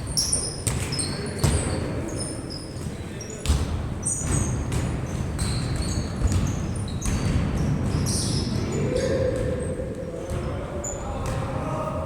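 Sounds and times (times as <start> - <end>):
basketball bouncing: 3.4 - 7.8
shoe squeaks on court: 5.4 - 7.3.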